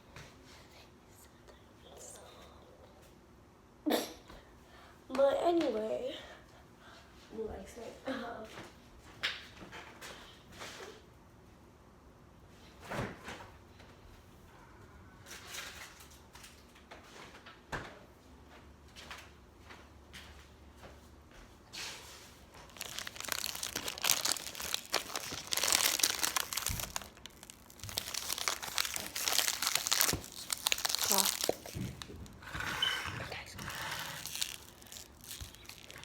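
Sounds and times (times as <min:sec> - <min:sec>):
packaging crinkling and crumpling: 0:22.5 - 0:32.4, 0:33.3 - 0:36.0.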